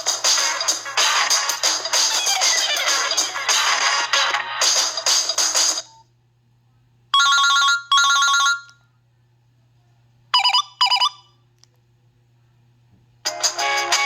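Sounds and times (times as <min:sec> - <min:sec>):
phone ringtones: 0:07.2 - 0:08.7, 0:10.4 - 0:11.2.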